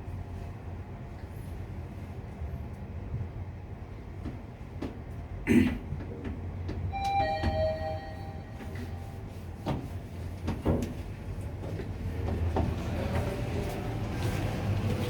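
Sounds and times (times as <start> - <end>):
elevator two-tone chime: 6.9 - 9.4.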